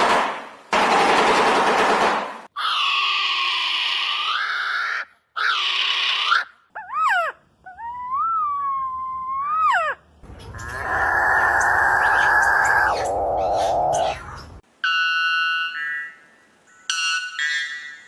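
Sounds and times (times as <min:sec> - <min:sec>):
long nasal bird calls: 0:02.6 - 0:14.6
harsh rasping bird call: 0:10.3 - 0:14.4
gliding bird whistle: 0:10.3 - 0:15.3.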